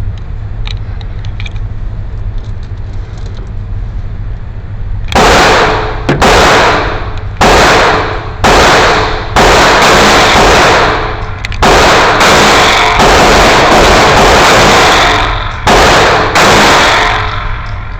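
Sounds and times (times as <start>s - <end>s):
pistol shots echoing: 5.2s - 17.5s.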